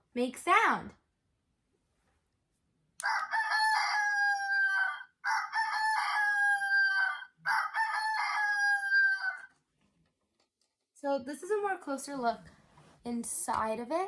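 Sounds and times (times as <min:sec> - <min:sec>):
electronic toy rooster crow: 0:03.0 - 0:09.5.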